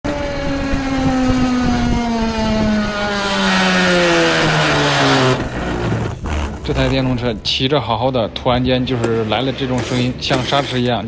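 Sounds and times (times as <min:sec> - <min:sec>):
electric bike motor whining: 0:00.1 - 0:06.5
rasping braking noise: 0:00.1 - 0:07.5.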